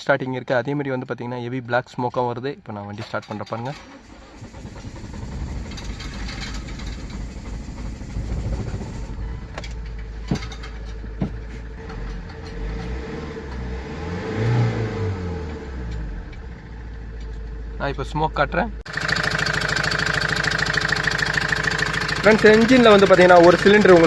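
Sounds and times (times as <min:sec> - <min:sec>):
diesel engine misfiring: 0:03.6 - 0:24.0
engine revving: 0:04.0 - 0:10.2, 0:11.6 - 0:17.0, 0:18.9 - 0:24.0
sharp knocks: 0:09.7 - 0:12.9.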